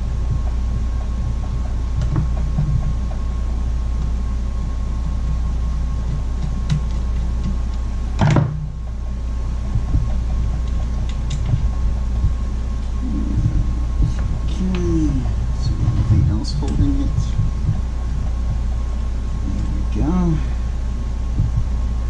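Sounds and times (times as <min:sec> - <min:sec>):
steady low hum: 0:00.0 - 0:22.0
loud knock: 0:08.2 - 0:08.7.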